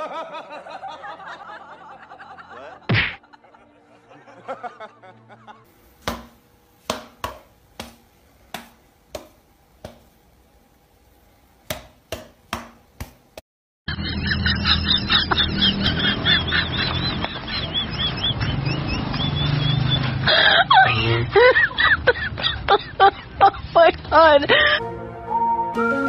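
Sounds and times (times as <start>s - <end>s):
sharp knocks: 6.0s - 10.1s.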